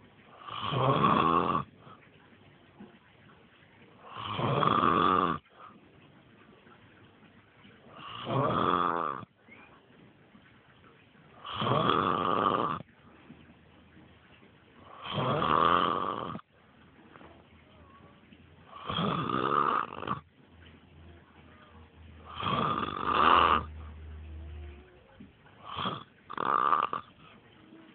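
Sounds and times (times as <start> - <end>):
man snoring loudly: 0.5 - 1.7, 4.2 - 5.4, 8.0 - 9.2, 11.5 - 12.8, 15.0 - 16.4, 18.8 - 20.2, 22.3 - 23.7.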